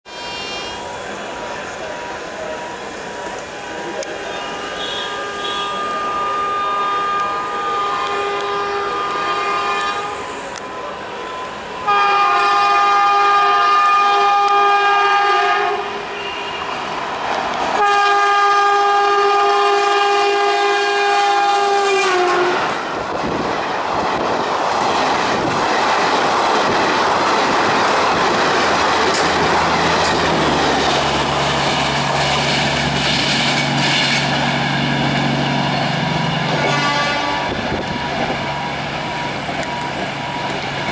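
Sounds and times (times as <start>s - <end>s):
train rushing past with wheel clatter: 0.1s - 40.9s
locomotive air horn blasts: 4.3s - 10.4s, 11.8s - 16.7s, 17.8s - 22.8s, 36.5s - 37.6s.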